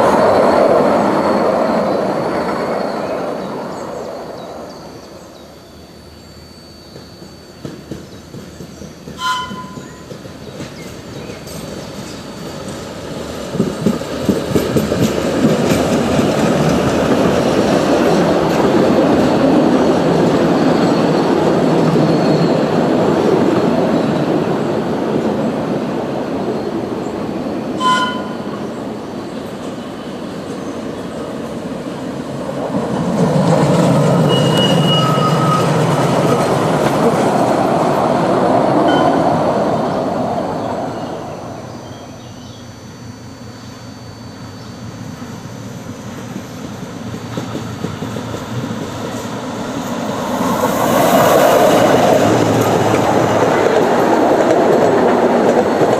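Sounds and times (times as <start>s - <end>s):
train rolling past: 0.0s - 55.9s
wheel squeals: 6.3s - 12.6s, 34.1s - 36.6s
train horn toot: 9.2s - 10.0s, 27.8s - 28.6s, 34.2s - 35.8s, 38.9s - 39.4s.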